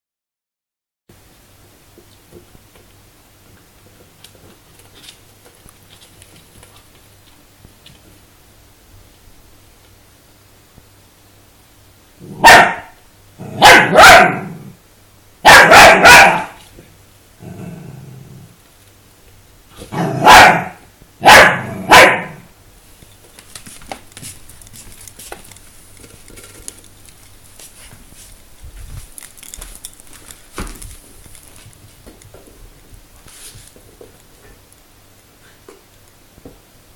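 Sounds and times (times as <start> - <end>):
dog barking: 12.4 - 14.7, 15.4 - 16.6, 19.9 - 22.5
dog grunt: 17.4 - 18.6.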